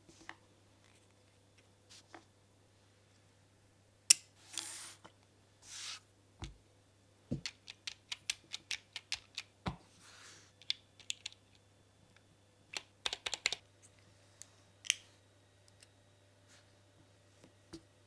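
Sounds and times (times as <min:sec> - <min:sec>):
mechanical keyboard typing: 0:07.5 - 0:09.5, 0:10.6 - 0:11.4, 0:12.8 - 0:13.6.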